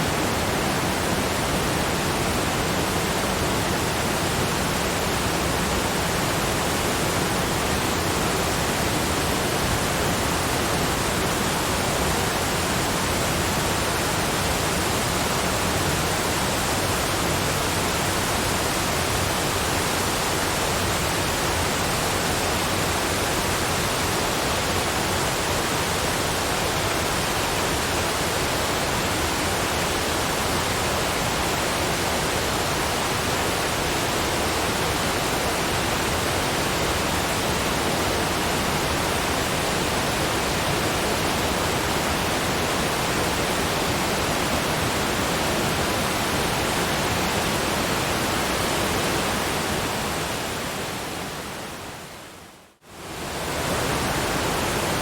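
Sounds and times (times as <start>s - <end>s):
waterfall rushing: 0.0s - 55.0s.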